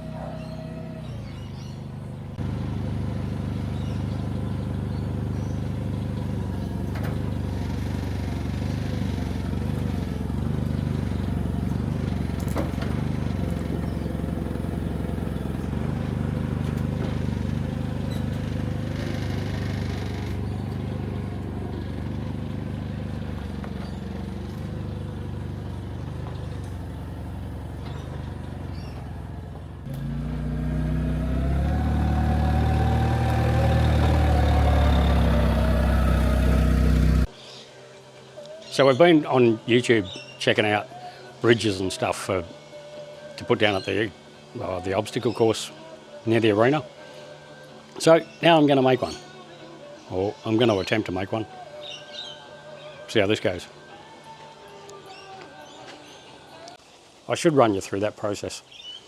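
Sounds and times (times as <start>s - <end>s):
forklift engine revving: 0.0s - 37.4s.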